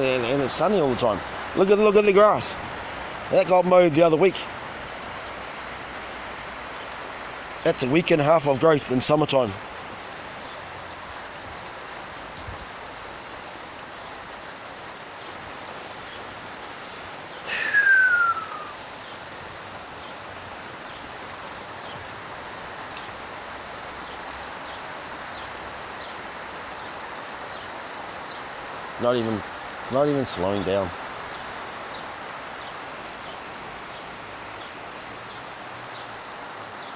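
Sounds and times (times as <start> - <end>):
heavy rain falling: 0.0 - 36.9
whistle falling in pitch: 17.5 - 18.8.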